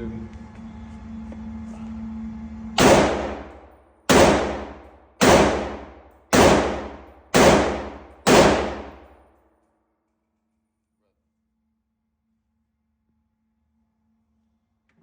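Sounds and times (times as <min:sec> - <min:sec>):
pistol shots: 0:02.8 - 0:09.2.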